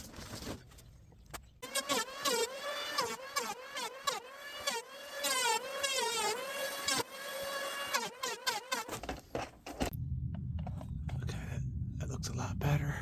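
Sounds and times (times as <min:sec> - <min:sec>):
electric planer cutting wood: 0:01.6 - 0:09.0.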